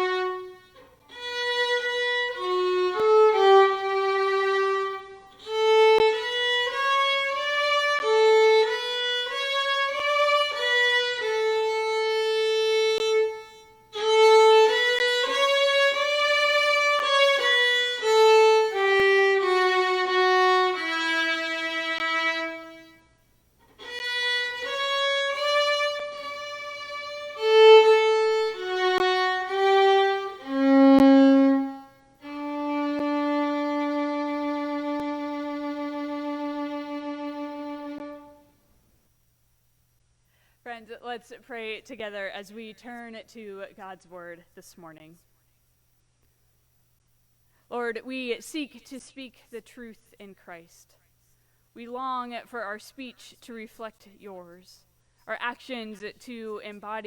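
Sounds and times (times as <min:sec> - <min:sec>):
solo violin slow melody: 0:00.0 - 0:38.6.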